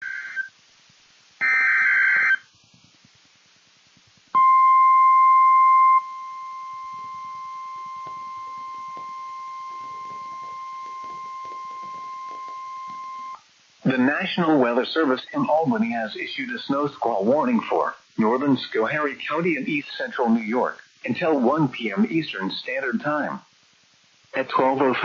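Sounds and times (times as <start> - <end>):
high warning alarm tone: 4.4 - 13.4.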